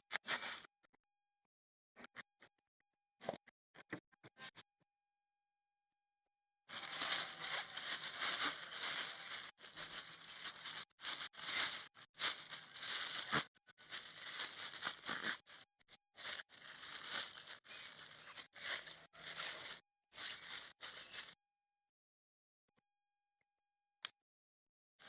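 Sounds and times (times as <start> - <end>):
plastic bag crinkling: 6.7 - 21.3.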